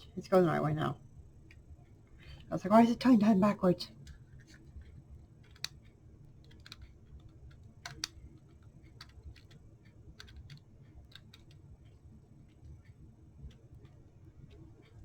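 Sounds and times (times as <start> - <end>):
clock ticking faintly: 4.8 - 15.0.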